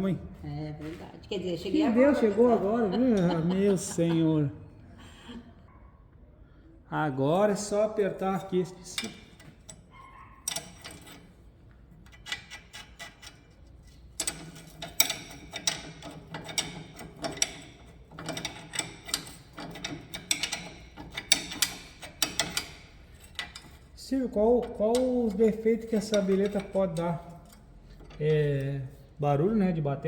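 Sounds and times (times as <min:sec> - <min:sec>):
ratchet wrench clicking: 0:08.9 - 0:11.4, 0:12.1 - 0:24.0.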